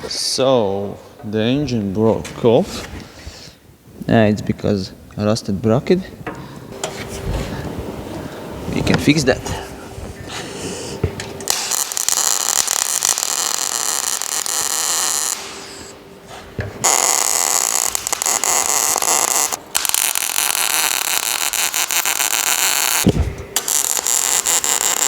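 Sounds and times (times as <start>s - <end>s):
electric welding crackle: 11.4s - 16.0s, 16.8s - 25.0s.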